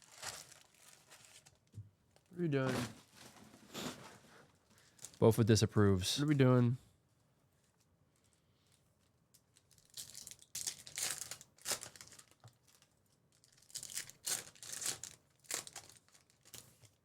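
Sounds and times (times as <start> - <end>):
wrappers tearing and crinkling: 0.0 - 1.7, 4.8 - 5.2, 9.4 - 17.0.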